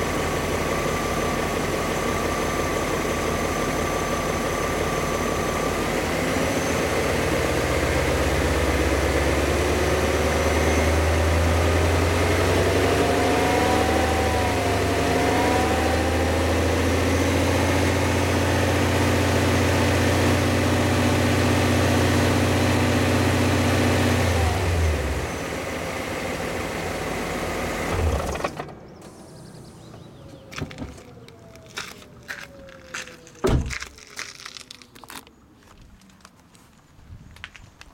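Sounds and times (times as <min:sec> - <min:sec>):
car engine revving: 0:05.5 - 0:32.3.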